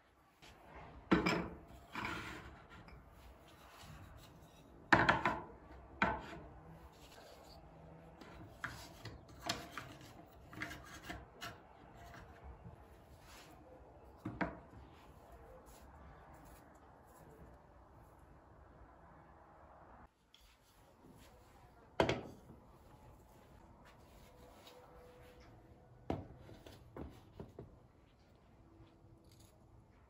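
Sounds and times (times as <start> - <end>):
objects knocking and scraping: 0.4 - 7.5, 8.1 - 15.1.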